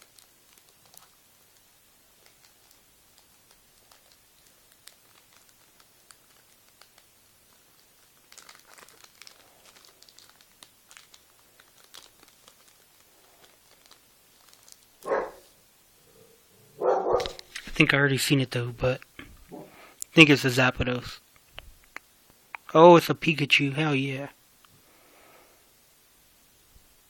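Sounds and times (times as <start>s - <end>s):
wrapper crinkling and tearing: 0.0s - 15.4s, 17.2s - 17.8s.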